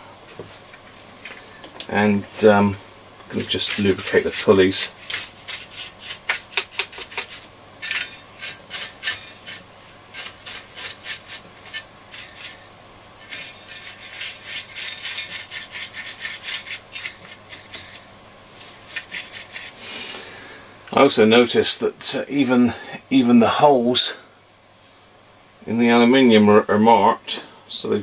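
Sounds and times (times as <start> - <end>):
brush scrubbing plastic: 3.3 - 19.8.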